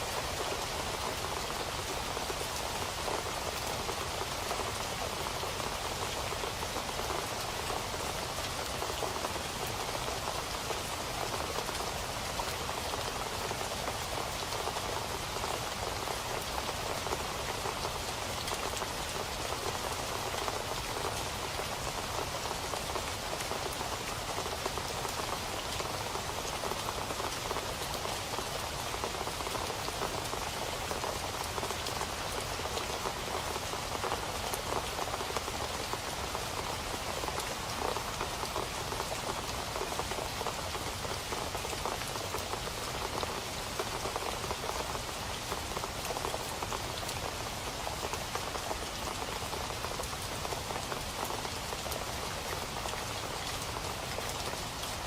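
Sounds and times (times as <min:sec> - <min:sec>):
rain pattering: 0:00.0 - 0:55.0.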